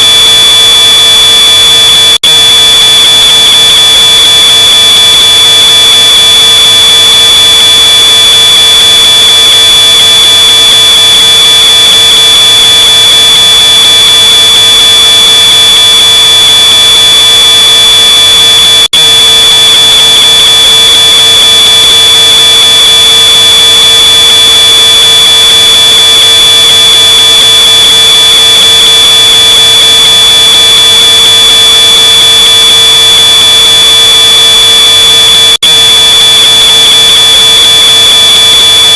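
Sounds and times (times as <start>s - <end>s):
distorted smoke alarm tone: 0.0s - 38.9s.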